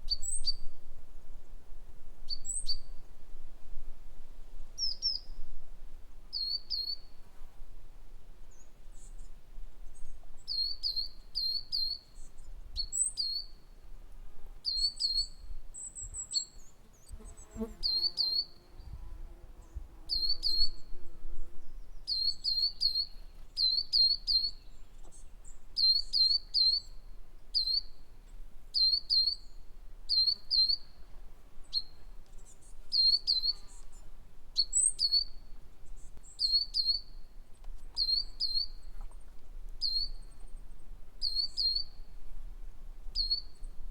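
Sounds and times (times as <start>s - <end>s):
small songbirds chirping: 0.1s - 0.7s, 2.3s - 3.1s, 4.8s - 5.4s, 6.3s - 7.2s, 8.5s - 13.8s, 14.6s - 19.0s, 19.6s - 28.1s, 28.8s - 42.2s, 43.1s - 43.9s.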